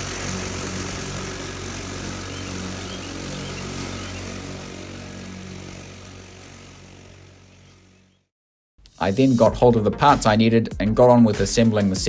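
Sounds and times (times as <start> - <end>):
blades cutting grass: 0.0 - 8.3, 8.9 - 9.7
electric motor hum: 0.0 - 8.3, 8.9 - 9.6.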